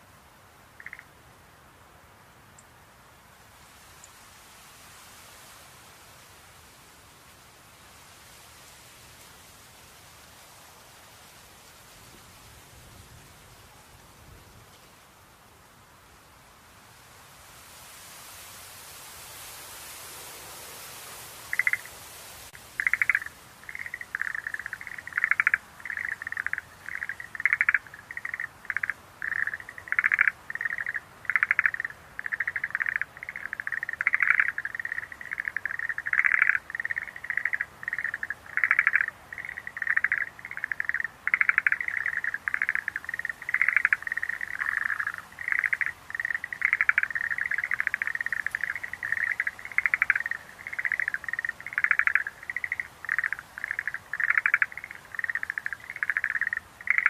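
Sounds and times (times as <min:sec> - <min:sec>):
faint hiss: 0:00.0 - 0:57.0
tree frogs trilling: 0:00.6 - 0:01.2, 0:20.8 - 0:22.0, 0:22.7 - 0:57.0.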